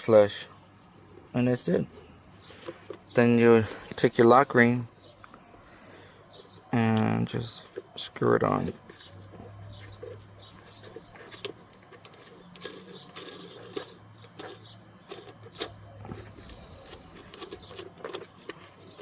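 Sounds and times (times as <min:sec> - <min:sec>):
low steady hum: 0:00.0 - 0:19.0
lock ring clicks and scrapes: 0:09.8 - 0:19.0.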